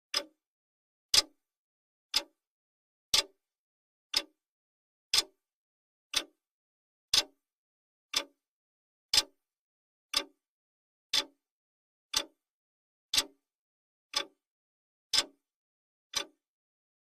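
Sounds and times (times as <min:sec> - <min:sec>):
clock ticking: 0:13.1 - 0:13.4, 0:14.1 - 0:14.3, 0:15.1 - 0:15.4, 0:16.1 - 0:16.4.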